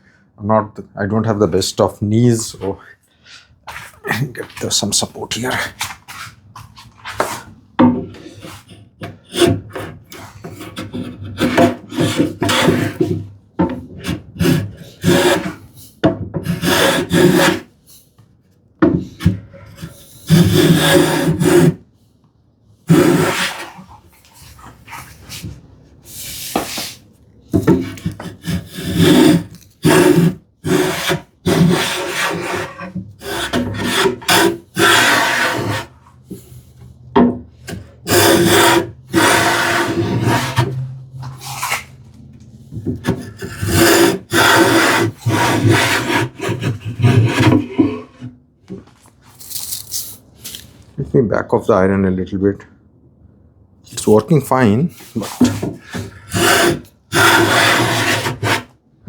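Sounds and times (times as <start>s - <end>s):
hand plane rasping strokes: 8.2s - 13.2s, 13.9s - 15.7s, 16.4s - 17.7s, 19.1s - 21.8s, 22.9s - 25.4s, 27.6s - 36.9s, 37.5s - 42.1s, 42.9s - 48.3s, 55.0s - 58.7s.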